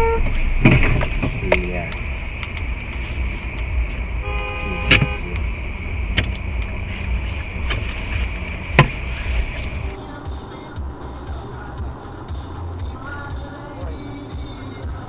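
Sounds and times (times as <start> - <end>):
car horn: 0.0 - 9.9
road and engine rumble: 0.0 - 15.0
sharp knocks: 8.7 - 9.2.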